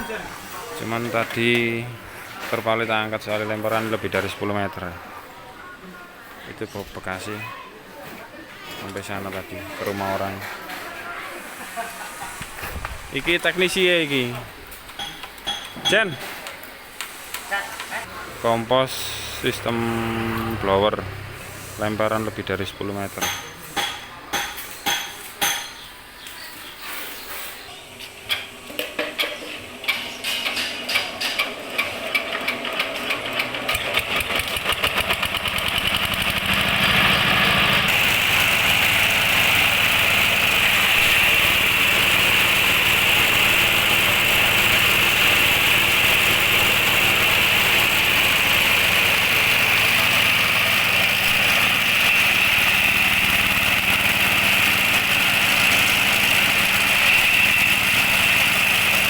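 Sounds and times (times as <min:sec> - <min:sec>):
diesel engine starting: 0:18.1 - 0:23.1, 0:30.9 - 0:59.0.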